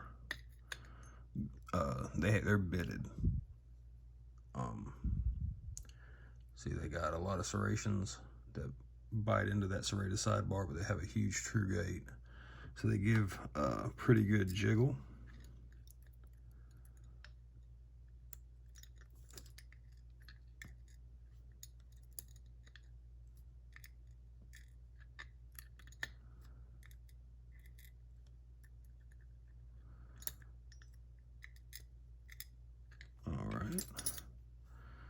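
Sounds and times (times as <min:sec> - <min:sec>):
low steady hum: 0:00.0 - 0:35.0
small metal parts clicking: 0:18.1 - 0:34.3.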